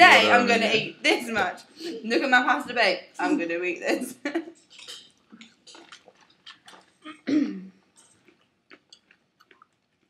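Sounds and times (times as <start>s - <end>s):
mouth clicks and smacks: 4.6s - 7.3s, 8.0s - 10.0s
wet chewing: 4.6s - 10.0s.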